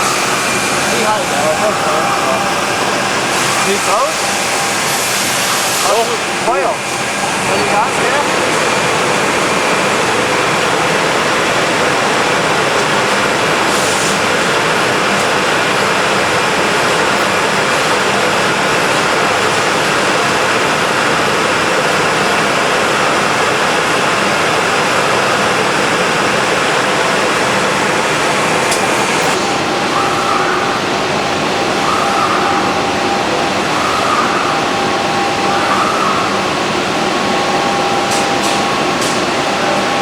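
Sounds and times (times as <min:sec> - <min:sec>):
woodworking machine rushing noise: 0:00.0 - 0:31.7
faint steady whine: 0:00.0 - 0:40.0.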